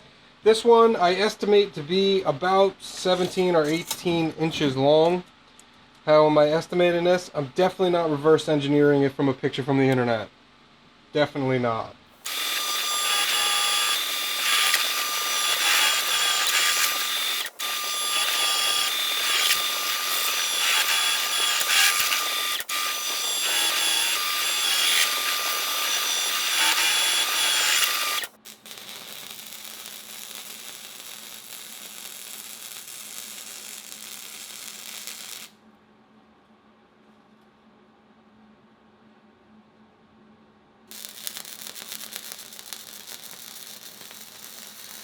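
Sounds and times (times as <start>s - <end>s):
power tool metallic whine: 12.3s - 35.5s, 40.9s - 45.0s.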